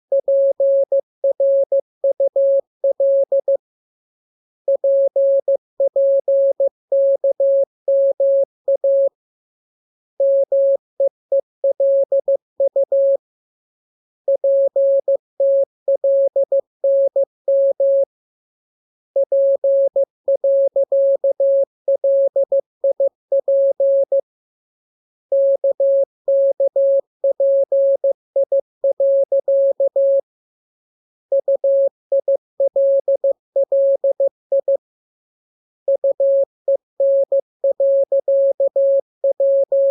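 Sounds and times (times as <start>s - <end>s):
morse code beep tone: 0.1s - 3.6s, 4.7s - 9.2s, 10.2s - 13.2s, 19.2s - 24.2s, 25.3s - 30.3s, 31.3s - 34.8s, 35.9s - 39.9s.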